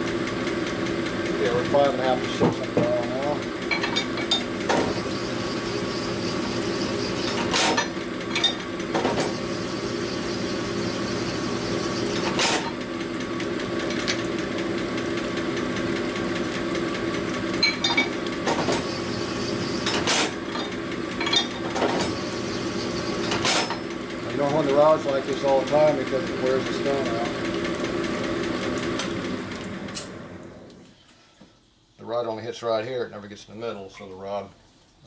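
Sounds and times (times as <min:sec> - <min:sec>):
honing machine humming: 0:03.2 - 0:08.2, 0:08.8 - 0:13.2, 0:17.7 - 0:23.4.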